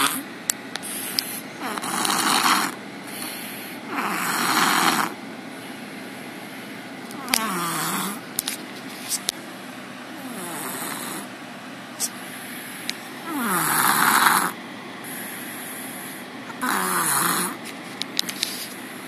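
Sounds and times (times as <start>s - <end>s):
person snoring: 0.0s - 0.2s, 0.8s - 5.2s, 7.2s - 8.2s, 10.2s - 11.3s, 12.4s - 17.6s.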